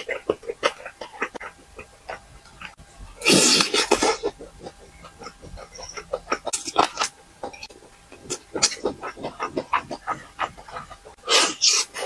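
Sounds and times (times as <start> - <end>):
chewing and mouth smacks: 0.0 - 12.0
loud slurping or crunching: 2.6 - 12.0.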